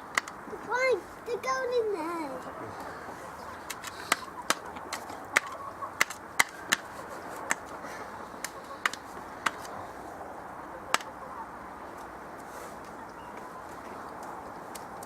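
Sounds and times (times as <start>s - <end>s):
sharp irregular clicks and knocks: 0.1s - 0.4s, 3.7s - 6.9s.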